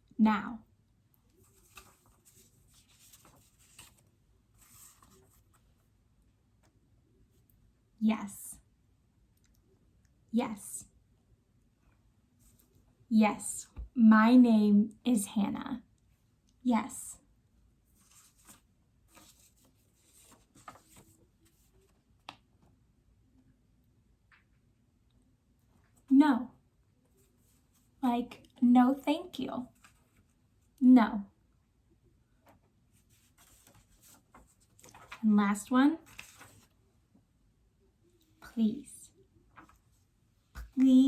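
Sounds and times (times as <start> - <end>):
faint soft rustles: 1.2 - 6.0, 17.8 - 22.7, 27.0 - 28.0, 29.6 - 30.7, 32.4 - 35.3, 36.0 - 37.0, 39.1 - 40.8.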